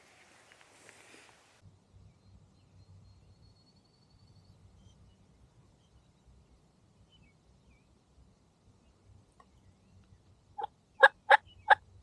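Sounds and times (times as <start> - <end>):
turkey calls: 11.0 - 11.8.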